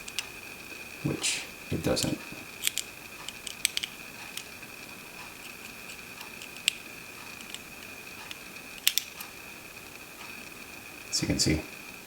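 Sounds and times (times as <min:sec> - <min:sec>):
wires clicking on battery: 0:00.0 - 0:00.4, 0:01.7 - 0:09.4
faint high whine: 0:00.0 - 0:12.0.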